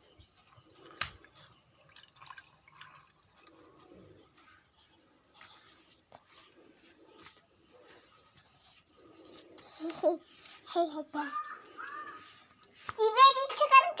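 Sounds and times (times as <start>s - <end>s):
water ticking and dripping: 0.0s - 3.7s.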